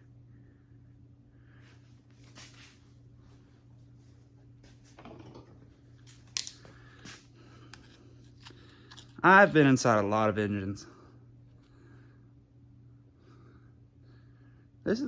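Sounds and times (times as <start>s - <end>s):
steady low hum: 0.0s - 15.0s
hand tools clicking and scraping: 7.6s - 9.6s.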